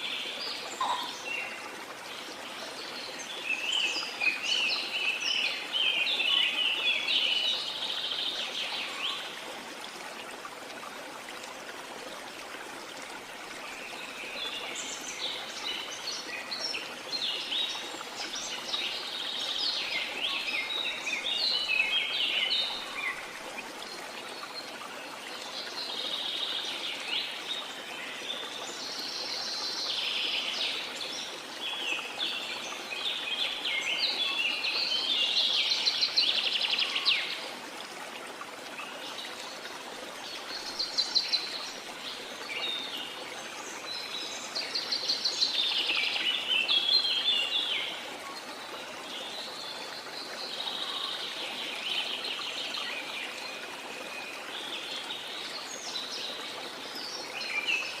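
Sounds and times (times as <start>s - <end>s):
songbirds twittering: 0.0s - 9.3s
rushing water: 0.0s - 58.0s.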